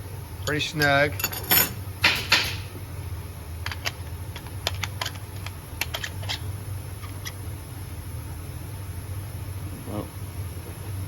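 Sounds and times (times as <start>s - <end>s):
low steady hum: 0.0s - 11.0s
tools clicking and tapping: 3.6s - 6.4s.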